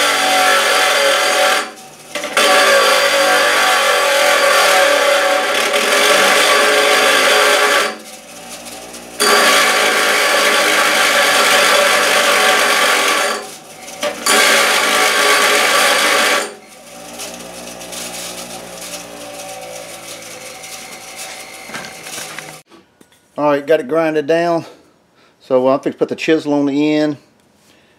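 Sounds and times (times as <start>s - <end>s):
power grinder grinding steel: 0.0s - 22.6s.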